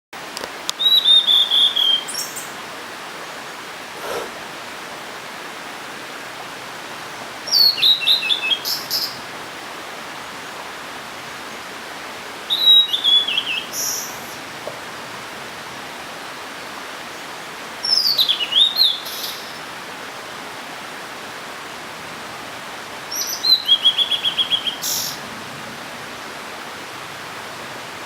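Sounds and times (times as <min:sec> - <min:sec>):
steady hiss: 0:00.2 - 0:28.0
bird singing high whistled notes: 0:00.8 - 0:02.6, 0:07.5 - 0:09.2, 0:12.5 - 0:14.2.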